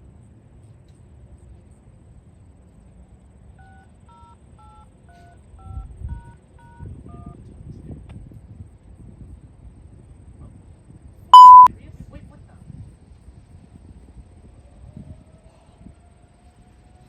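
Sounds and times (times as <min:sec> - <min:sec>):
touch-tone beeps: 0:11.4 - 0:11.7.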